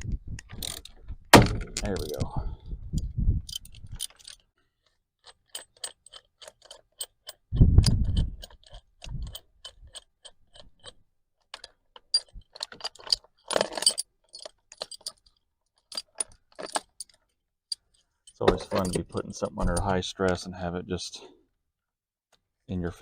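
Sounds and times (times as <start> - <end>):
heavy thud: 1.3 - 1.8.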